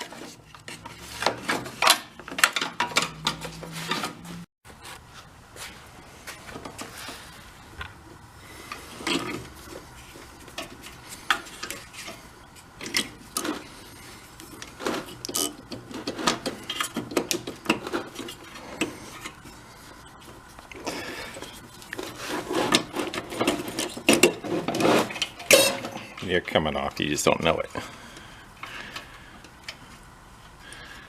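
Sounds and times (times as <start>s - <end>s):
metal tools on engine parts: 0.0s - 4.4s, 8.6s - 19.6s, 21.3s - 26.3s.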